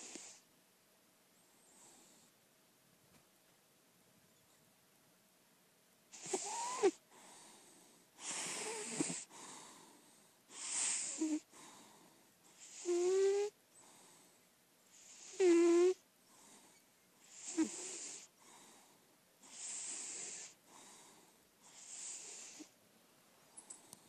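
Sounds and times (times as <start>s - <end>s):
cat snoring: 0.0s - 0.4s, 6.2s - 7.0s, 8.2s - 9.4s, 10.5s - 14.2s, 14.9s - 16.6s, 17.2s - 18.7s, 19.4s - 22.8s
soft cat breaths: 0.0s - 0.5s, 1.5s - 2.4s, 6.1s - 22.8s, 23.4s - 24.0s.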